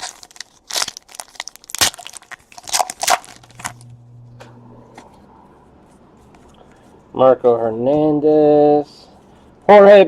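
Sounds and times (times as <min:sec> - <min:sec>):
card pack wrappers tearing: 0:00.0 - 0:03.8
low steady hum: 0:00.0 - 0:10.0.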